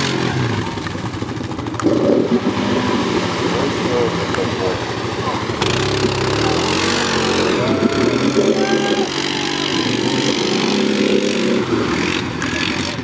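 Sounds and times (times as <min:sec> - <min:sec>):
atv engines revving: 0:00.0 - 0:13.0.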